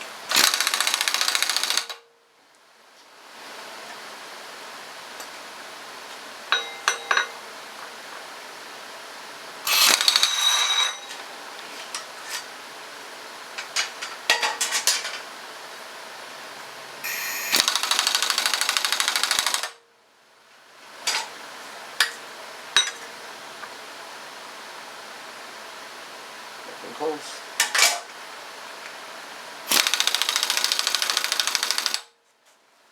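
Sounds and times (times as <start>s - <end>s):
impact wrench hammering: 6.6s - 7.3s, 9.7s - 11.0s, 17.1s - 19.7s
metal tool clinks: 6.6s - 7.4s.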